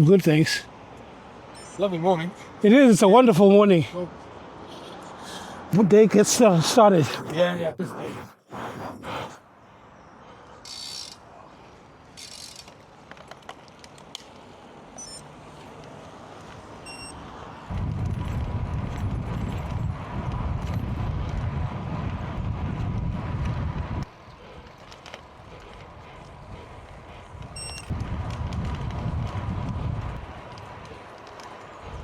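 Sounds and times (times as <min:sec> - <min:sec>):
bike riding noise: 0:00.7 - 0:09.4, 0:10.1 - 0:32.0
wind rumbling over microphone: 0:17.7 - 0:24.6, 0:25.3 - 0:31.1, 0:31.7 - 0:32.0.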